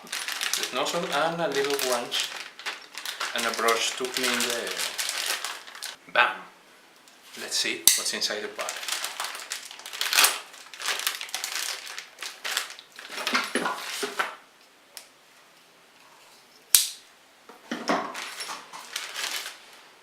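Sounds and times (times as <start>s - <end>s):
plastic bag crinkling: 0.0s - 6.0s, 8.4s - 14.4s, 18.1s - 19.9s.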